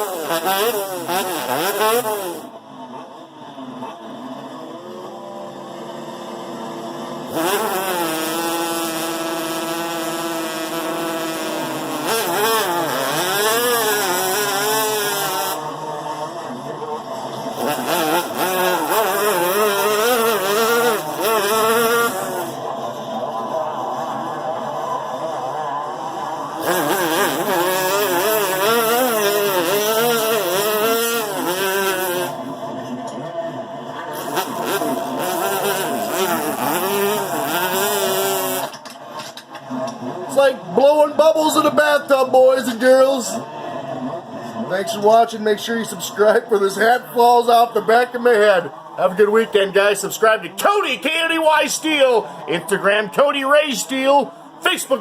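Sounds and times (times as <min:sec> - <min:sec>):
vocal imitation of engine buzz: 0:00.0 - 0:38.9.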